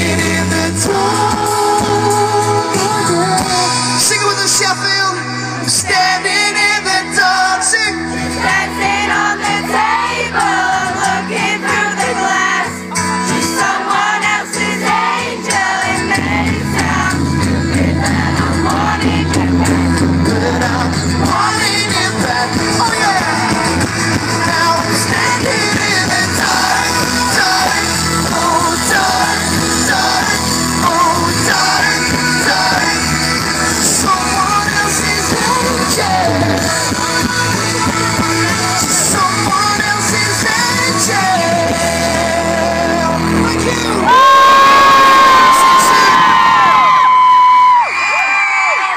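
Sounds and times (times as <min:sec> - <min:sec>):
person singing: 0:00.0 - 0:47.1
live pop-rock band: 0:00.0 - 0:48.9
people shouting: 0:44.0 - 0:47.9.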